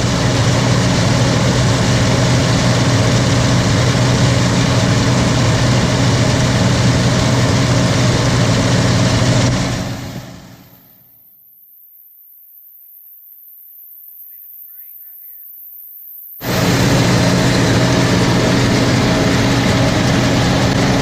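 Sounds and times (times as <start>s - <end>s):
tractor engine running steadily: 0.0s - 11.0s, 16.4s - 21.0s.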